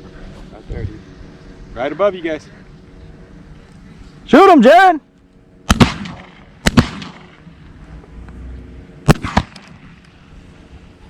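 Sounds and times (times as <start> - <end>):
shotgun shots: 5.7 - 7.4, 9.1 - 10.0.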